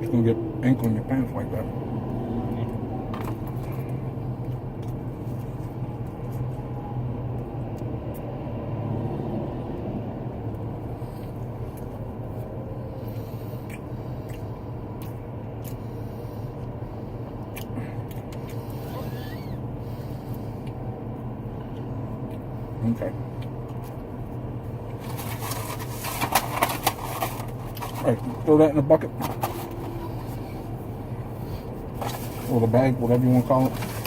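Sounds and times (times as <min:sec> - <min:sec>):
car engine idling: 0:10.2 - 0:34.0.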